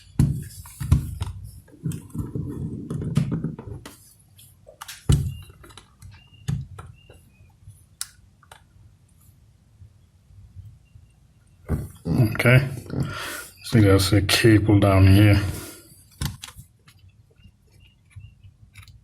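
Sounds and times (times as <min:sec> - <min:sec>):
plastic knocks: 0:00.2 - 0:04.0.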